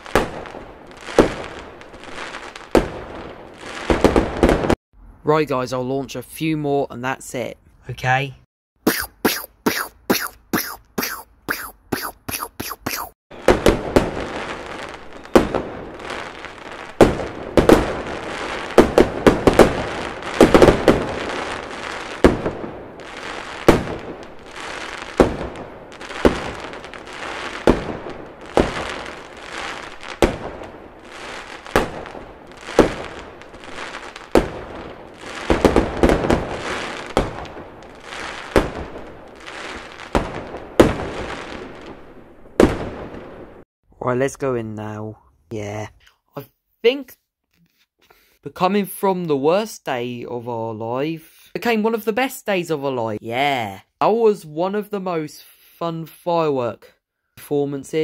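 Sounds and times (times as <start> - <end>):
fireworks bangs: 0.0 - 4.8, 8.9 - 43.6
fireworks crackling hiss: 8.9 - 13.2, 18.2 - 41.9.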